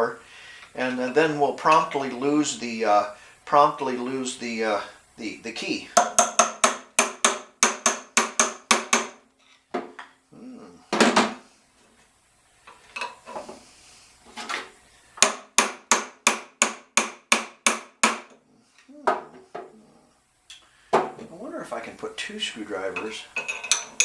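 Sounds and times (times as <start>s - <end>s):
hammer striking metal pulley: 6.0s - 9.2s.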